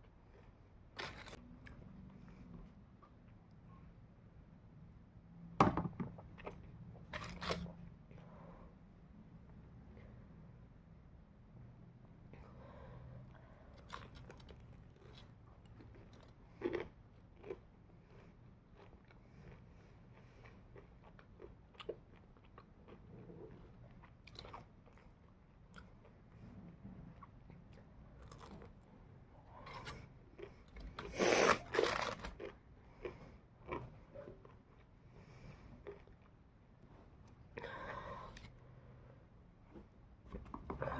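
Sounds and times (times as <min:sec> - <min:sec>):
crunching fried chicken: 0:13.7 - 0:19.6, 0:29.6 - 0:34.8.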